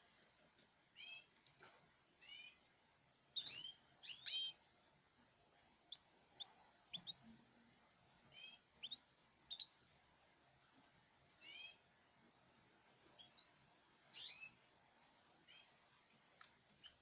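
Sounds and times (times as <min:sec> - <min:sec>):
birds chirping: 0:03.4 - 0:04.6, 0:05.9 - 0:07.2, 0:08.3 - 0:09.8.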